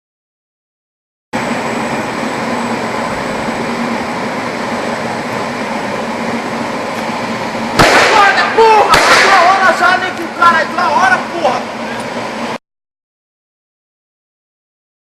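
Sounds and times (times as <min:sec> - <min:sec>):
faint high whine: 0:01.4 - 0:12.6
loud steady noise: 0:01.4 - 0:12.6
loud voice: 0:08.0 - 0:11.6.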